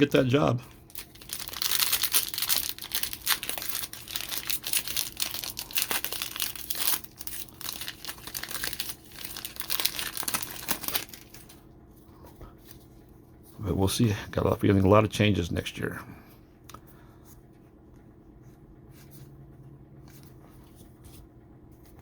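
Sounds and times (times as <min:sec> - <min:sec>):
plastic wrapper tearing and crinkling: 0:00.0 - 0:11.6.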